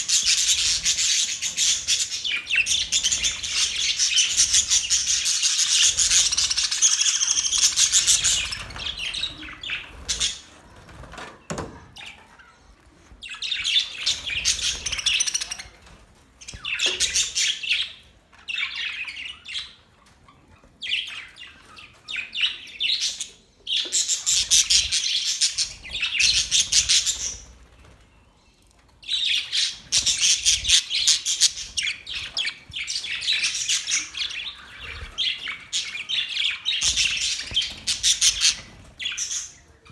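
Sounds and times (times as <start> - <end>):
budgerigars chattering and warbling: 0.0 - 10.5, 13.2 - 15.8, 29.0 - 39.9.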